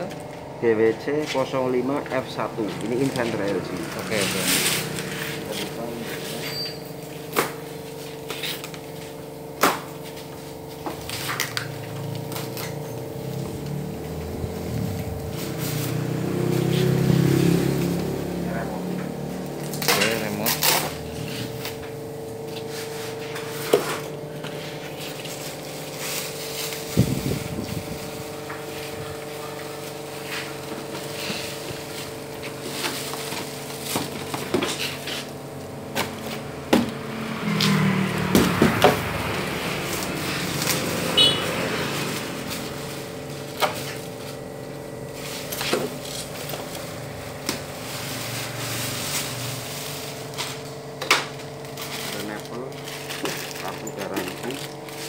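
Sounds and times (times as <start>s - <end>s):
packaging rustling: 19.6s - 36.6s, 39.8s - 55.0s.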